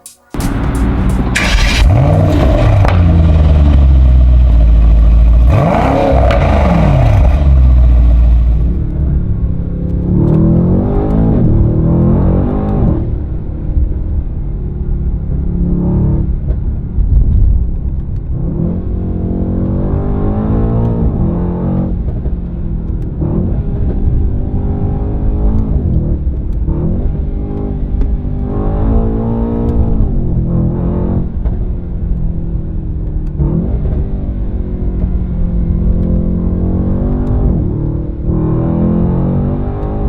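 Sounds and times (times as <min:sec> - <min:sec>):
car engine accelerating hard: 0:00.4 - 0:17.6, 0:33.1 - 0:40.0.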